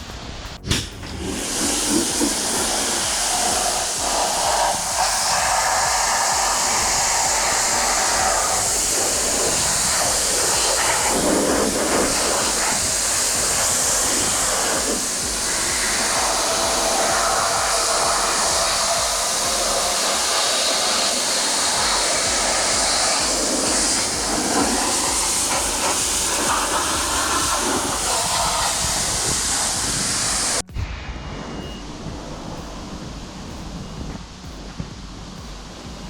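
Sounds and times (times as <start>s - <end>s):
pressure washer spraying water: 0.0s - 30.8s.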